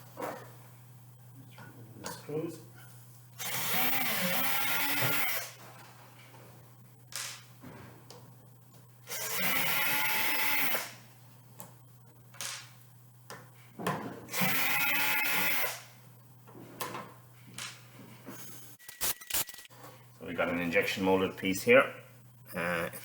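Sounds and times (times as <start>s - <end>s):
cordless drill running: 3.4s - 5.6s, 9.1s - 11.0s, 14.3s - 15.8s.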